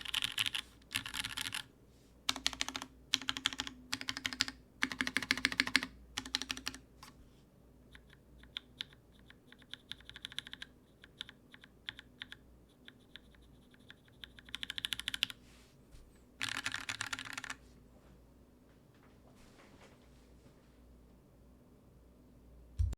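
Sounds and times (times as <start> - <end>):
typing on mechanical keyboard: 0.0 - 1.7, 2.3 - 6.8, 7.9 - 15.4, 16.4 - 17.6.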